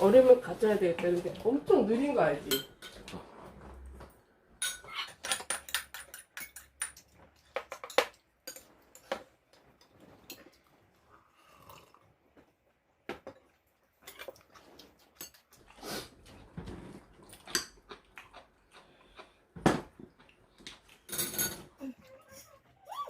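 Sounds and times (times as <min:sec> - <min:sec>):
cutlery clinking against dishes: 0:02.5 - 0:03.2, 0:04.6 - 0:09.3, 0:21.0 - 0:21.8
chewing: 0:13.4 - 0:21.1.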